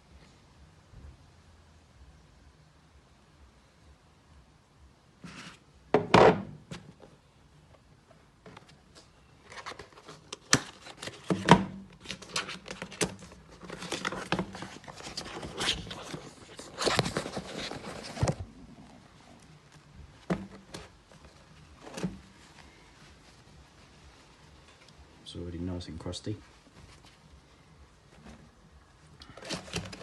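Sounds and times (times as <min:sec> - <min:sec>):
packaging rustling: 0:09.4 - 0:11.4, 0:12.0 - 0:19.9, 0:29.2 - 0:30.0.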